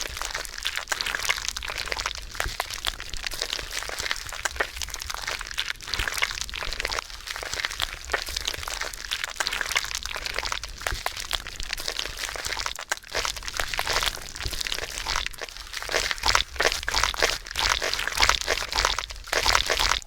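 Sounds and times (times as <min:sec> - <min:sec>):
slime crackling and popping: 0:00.0 - 0:20.0.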